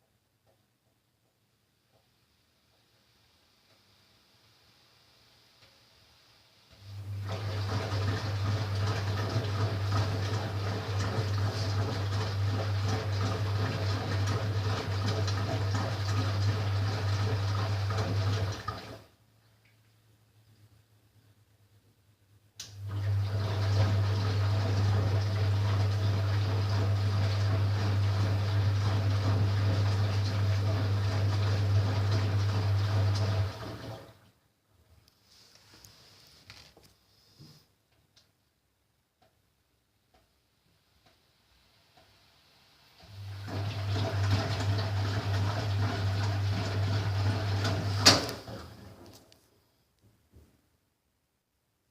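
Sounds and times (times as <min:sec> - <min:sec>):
washing machine hum: 0:05.6 - 0:19.4, 0:22.6 - 0:35.0, 0:40.6 - 0:49.4
washing machine click: 0:47.7 - 0:48.7.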